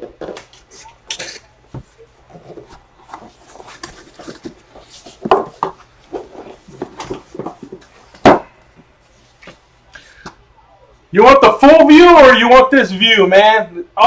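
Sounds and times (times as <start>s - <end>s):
cardboard boxes being handled: 1.8s - 8.2s.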